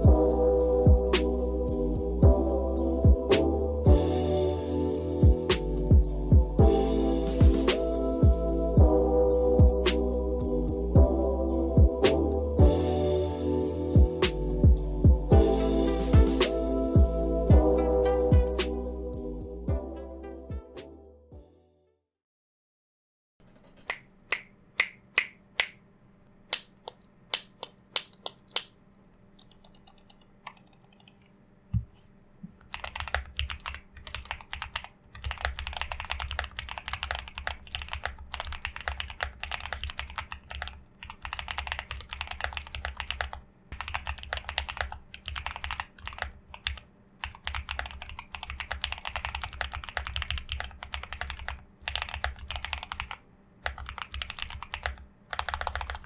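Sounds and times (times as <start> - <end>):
mechanical keyboard typing: 26.5 - 28.7, 29.4 - 31.2, 32.6 - 56.0.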